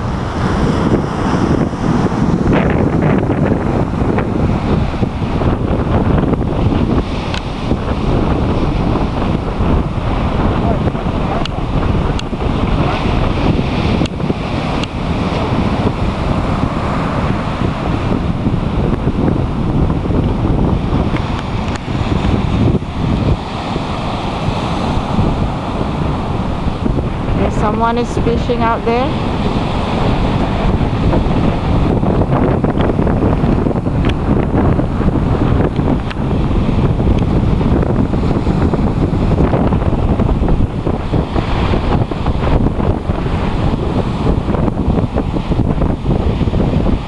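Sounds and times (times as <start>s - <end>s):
sea surf: 0.0s - 47.0s
wind buffeting microphone: 0.0s - 47.0s.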